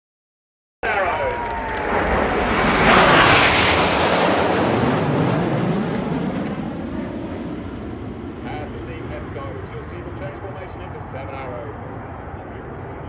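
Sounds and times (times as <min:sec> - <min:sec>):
jets passing by: 0:00.8 - 0:13.0.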